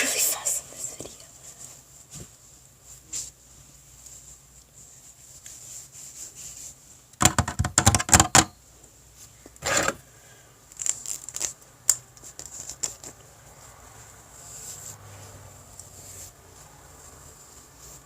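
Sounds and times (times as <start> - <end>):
hairbrush scratching through hair: 12.5 - 18.0.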